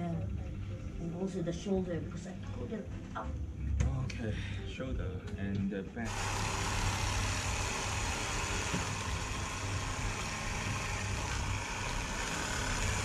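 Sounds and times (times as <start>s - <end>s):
motor humming with hiss: 6.1s - 13.0s.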